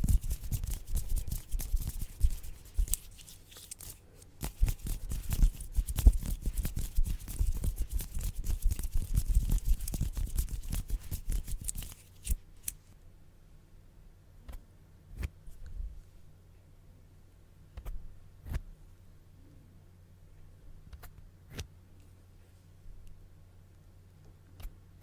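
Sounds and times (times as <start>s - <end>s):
scissors snipping: 0.0s - 12.8s.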